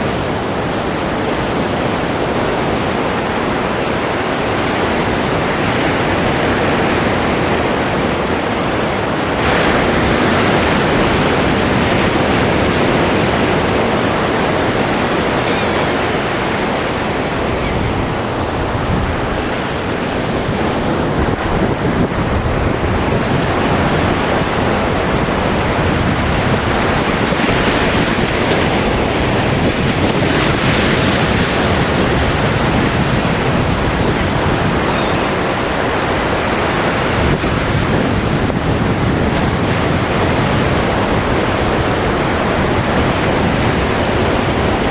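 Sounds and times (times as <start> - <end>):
waves breaking: 0.0 - 44.9.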